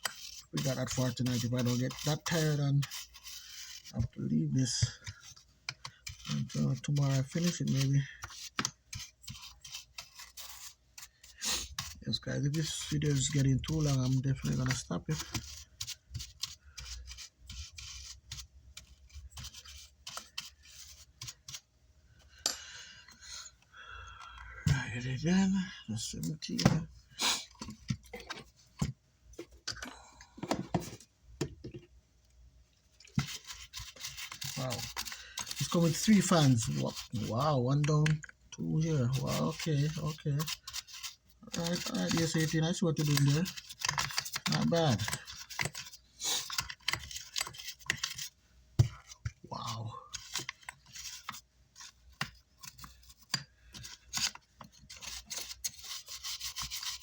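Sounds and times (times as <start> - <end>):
hand tool scraping circuit board: 0.0 - 21.7, 33.1 - 57.0
tools clicking and tapping: 41.7 - 49.4, 50.1 - 55.8.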